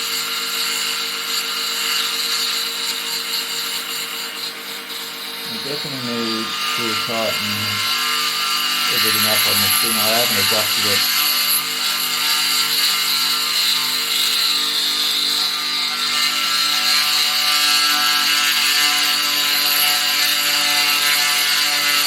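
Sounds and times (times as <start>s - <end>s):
milling machine whining: 4.4s - 12.2s.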